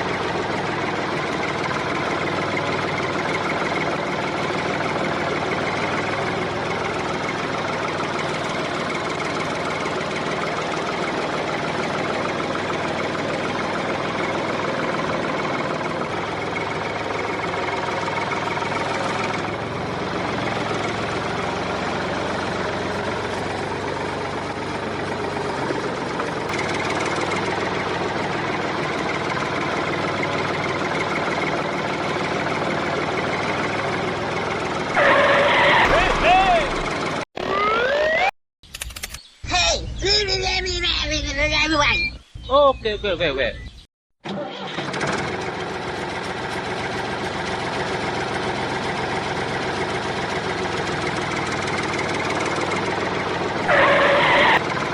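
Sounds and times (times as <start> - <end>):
small motor running: 36.4 - 39.2.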